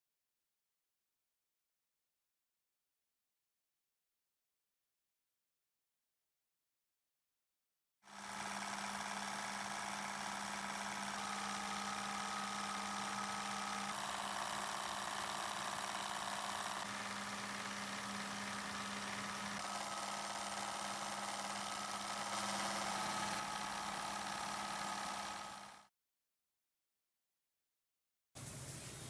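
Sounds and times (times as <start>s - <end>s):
water pump machine hum: 8.1s - 25.9s.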